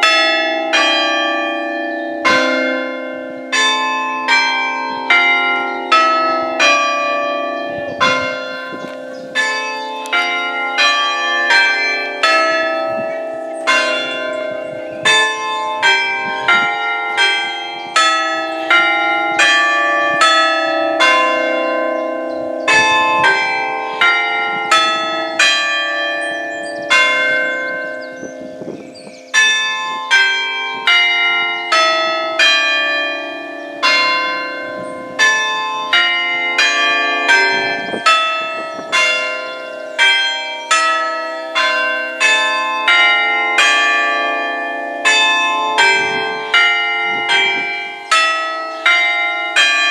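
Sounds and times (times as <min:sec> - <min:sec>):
church bells chiming: 0:00.0 - 0:49.9.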